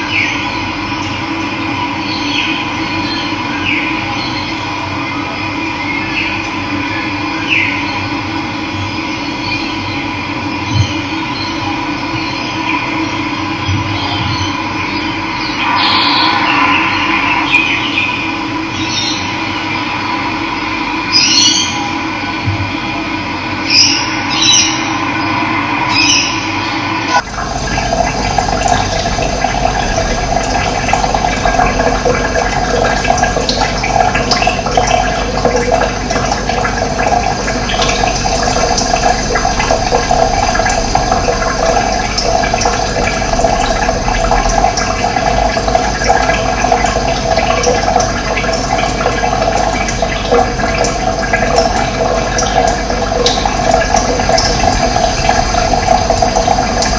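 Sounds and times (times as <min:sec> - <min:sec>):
running water rushing: 0:15.2 - 0:21.8, 0:23.7 - 0:56.9.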